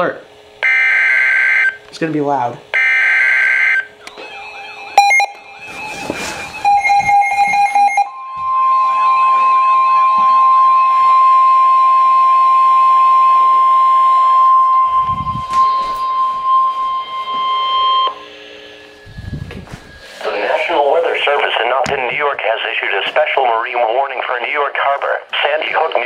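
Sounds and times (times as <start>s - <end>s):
steady single-pitch warning tone: 0.6s - 1.8s, 2.7s - 22.9s
warbling digital header tones: 2.8s - 5.7s, 6.4s - 22.9s.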